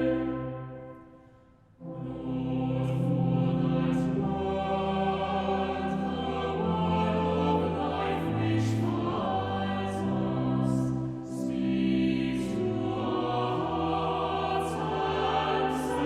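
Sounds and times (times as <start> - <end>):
choral music: 0.0 - 16.0.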